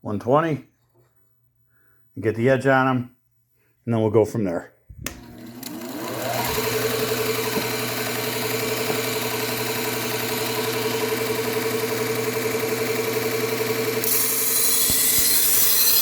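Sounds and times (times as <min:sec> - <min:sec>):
electric motor humming: 0:05.0 - 0:16.0.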